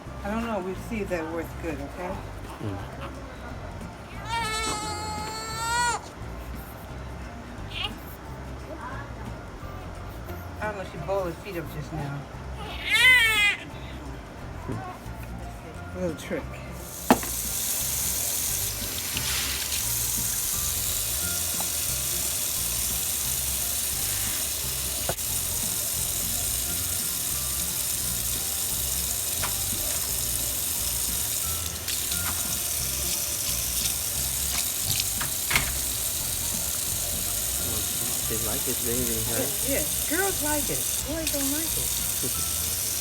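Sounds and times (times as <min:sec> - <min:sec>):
tap water running into sink: 0:16.8 - 0:43.0.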